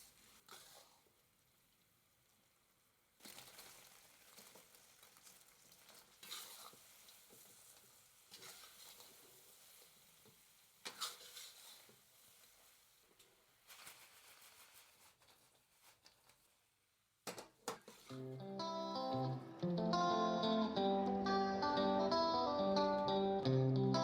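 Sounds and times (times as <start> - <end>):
food sizzling in a wok: 3.2 - 14.7.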